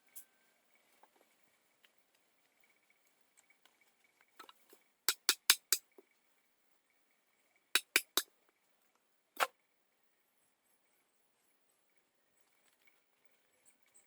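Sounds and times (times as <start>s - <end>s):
sharp hard knocks: 5.1s - 5.8s, 7.8s - 8.2s.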